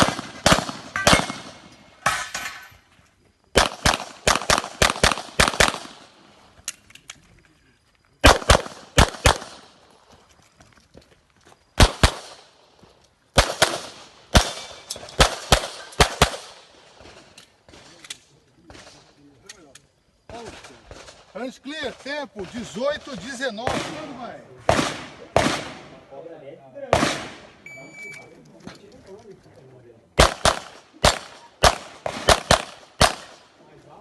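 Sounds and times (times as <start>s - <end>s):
pistol shots: 0.0s - 2.3s, 3.5s - 6.1s, 8.2s - 9.8s, 11.8s - 12.5s, 13.3s - 16.6s, 23.6s - 26.0s, 26.9s - 27.5s, 30.2s - 33.4s.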